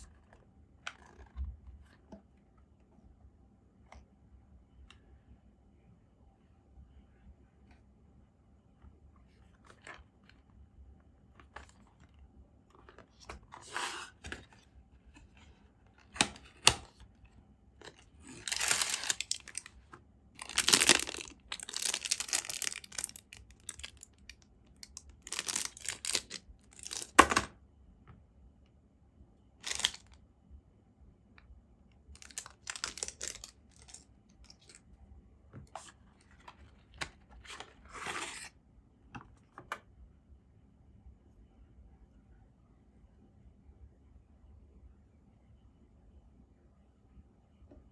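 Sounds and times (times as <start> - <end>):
plastic rustling and tearing: 17.8 - 19.8, 20.4 - 24.2, 24.9 - 27.2, 29.6 - 30.1, 32.2 - 34.8.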